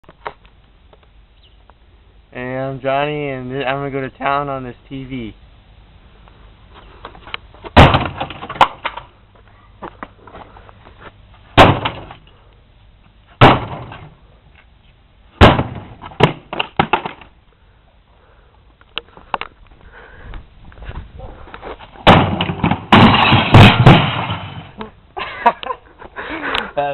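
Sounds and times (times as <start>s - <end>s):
sledgehammer smashing television: 7.8s - 8.8s, 15.4s - 17.0s, 22.0s - 24.8s
glass breaking: 22.0s - 24.8s.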